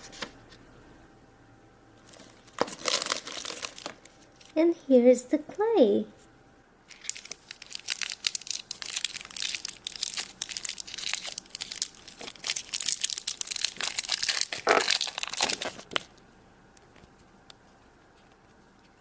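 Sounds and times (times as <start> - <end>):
plastic wrapper crinkling: 2.0 - 4.6, 6.9 - 16.2.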